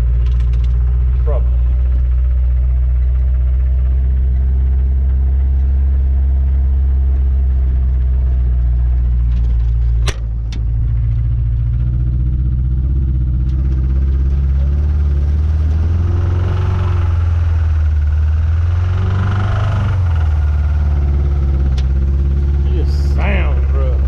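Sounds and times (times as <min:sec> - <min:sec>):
engine with rod knock: 0:00.0 - 0:01.1, 0:09.0 - 0:11.8, 0:12.9 - 0:17.1, 0:18.9 - 0:22.3.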